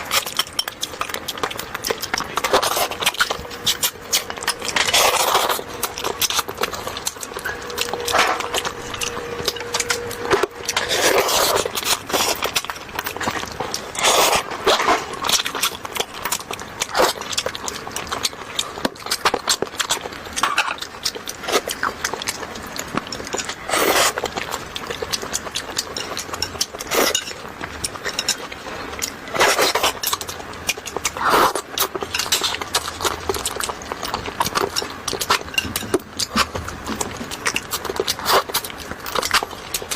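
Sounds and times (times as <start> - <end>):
chewing with wet mouth clicks: 0.0 - 39.9.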